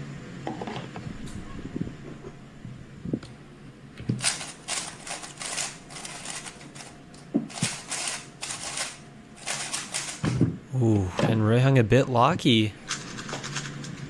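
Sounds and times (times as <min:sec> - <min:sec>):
puzzle cube rapid plastic clicking: 0:04.2 - 0:06.9, 0:07.5 - 0:10.2.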